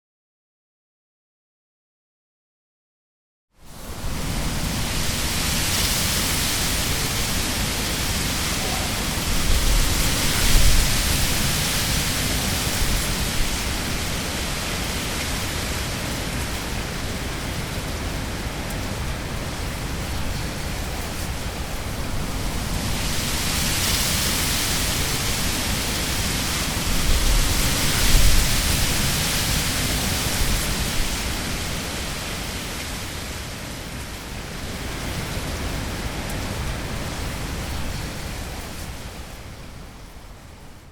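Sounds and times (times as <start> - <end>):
low rumble of wind gusts: 3.6 - 40.9
wind rustling through rushes: 3.6 - 40.9.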